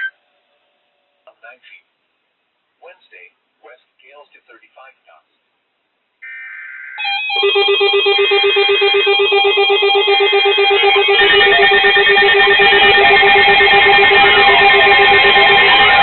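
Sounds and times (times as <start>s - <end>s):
steady high electronic tones: 6.2s - 16.0s
sweeping tones: 7.0s - 16.0s
fast-pulsing low beep: 8.9s - 16.0s.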